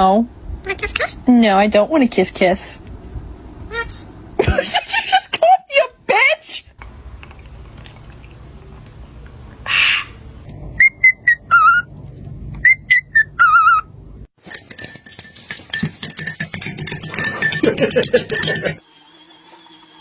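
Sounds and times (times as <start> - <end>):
parrot whistling: 10.8 - 11.9, 12.6 - 13.9.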